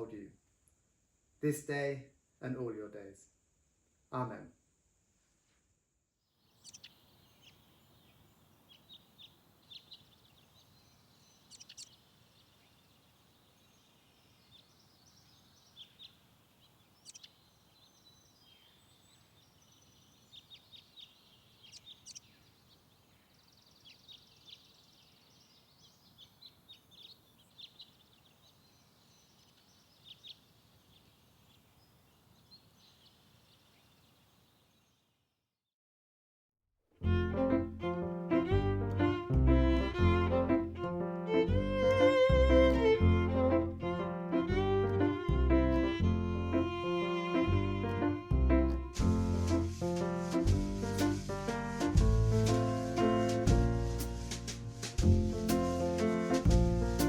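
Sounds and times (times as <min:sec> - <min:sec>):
birds chirping: 0:06.4 - 0:35.2
steady background hiss: 0:06.5 - 0:34.9.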